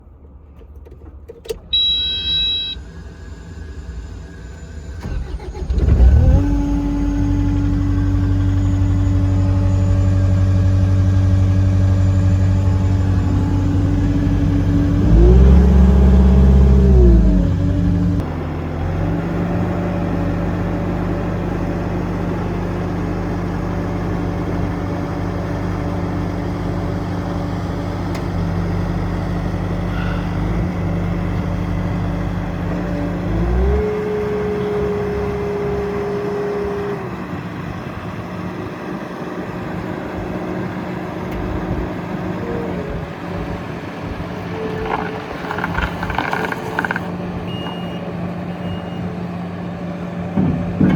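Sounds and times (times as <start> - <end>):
diesel engine cranking and running: 0.0 - 50.9
short electronic beep: 1.7 - 2.9.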